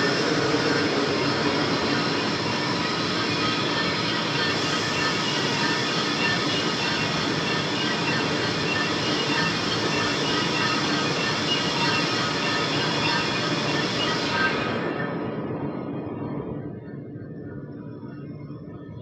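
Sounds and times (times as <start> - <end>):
lathe cutting drone: 0.0 - 15.1
high ringing tones: 0.0 - 15.4.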